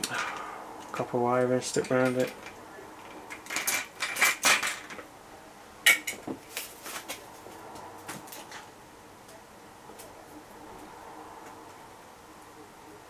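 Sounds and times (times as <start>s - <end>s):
dish rack clattering: 1.8s - 5.0s.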